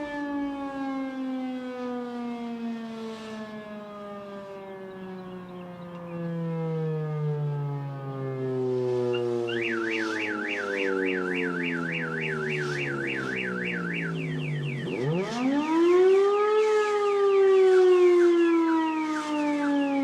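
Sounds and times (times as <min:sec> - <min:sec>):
mechanical air-raid siren: 0:00.0 - 0:20.0
fast electronic warble: 0:09.1 - 0:16.1.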